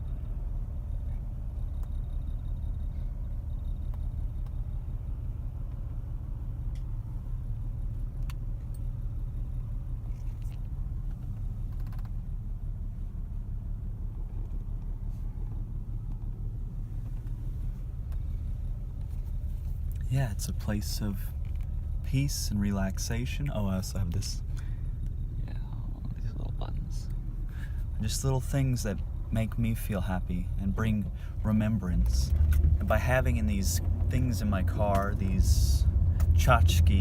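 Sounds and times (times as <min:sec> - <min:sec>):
car cabin rumble: 0:00.0 - 0:37.0
faint clicks and rattles: 0:01.0 - 0:05.9, 0:07.8 - 0:12.4.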